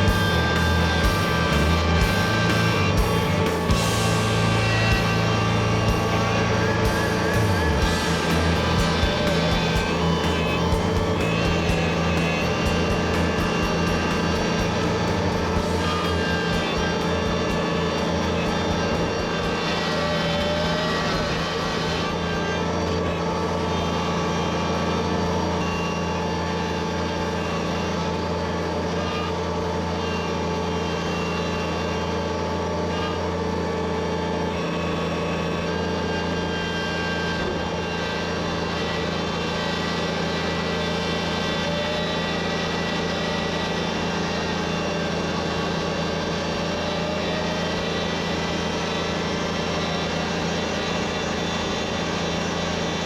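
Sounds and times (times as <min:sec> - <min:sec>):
diesel engine running steadily: 0:00.0 - 0:53.0.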